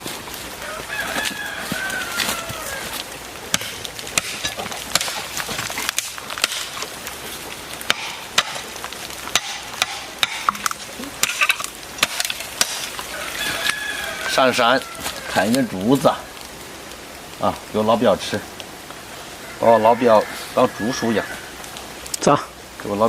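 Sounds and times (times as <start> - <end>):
rooster crowing: 0.6 - 3.0, 13.0 - 15.6, 19.4 - 21.7
sharp knocks: 9.3 - 12.8.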